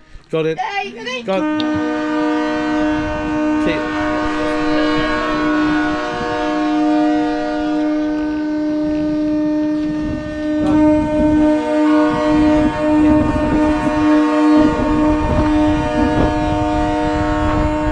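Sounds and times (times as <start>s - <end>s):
boat horns blasting: 1.2s - 17.9s.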